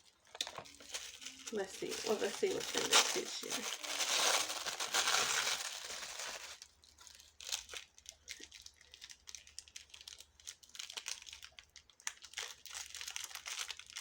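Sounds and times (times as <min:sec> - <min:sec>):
tissue paper rustling: 0:00.6 - 0:06.6.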